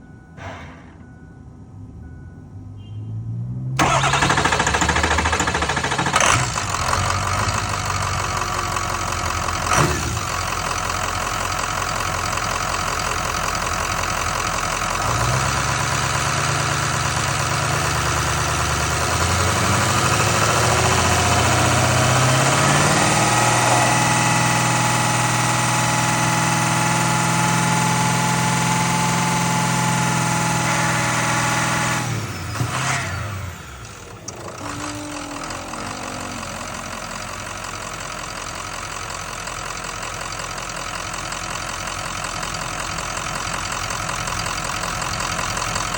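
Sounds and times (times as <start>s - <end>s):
diesel engine running: 3.5s - 45.9s
high whine: 33.9s - 38.6s.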